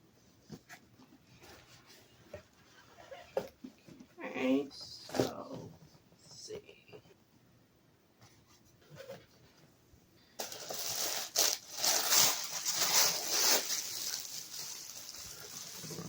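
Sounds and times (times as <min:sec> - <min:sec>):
packing material rustling: 0:10.4 - 0:16.0.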